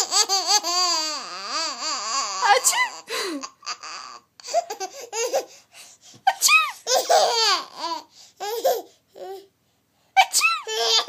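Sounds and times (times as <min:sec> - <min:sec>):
baby giggling: 0:06.3 - 0:08.9, 0:10.2 - 0:11.0.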